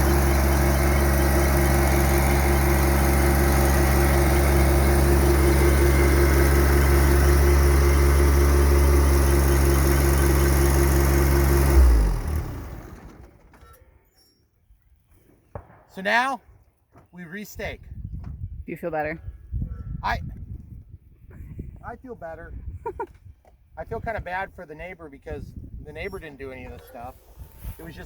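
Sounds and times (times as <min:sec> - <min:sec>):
engine winding down: 0:00.0 - 0:13.5
tractor diesel engine running: 0:00.0 - 0:13.5.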